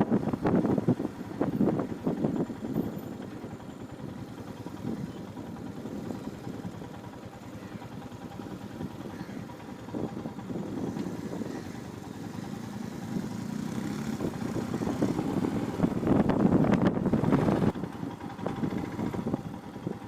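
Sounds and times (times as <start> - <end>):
motorcycle engine running: 0.0 - 20.0.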